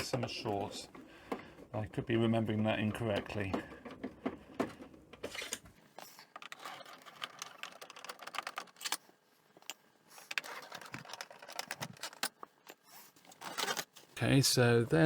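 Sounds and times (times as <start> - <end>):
hands tapping and rattling casing: 6.0 - 14.0.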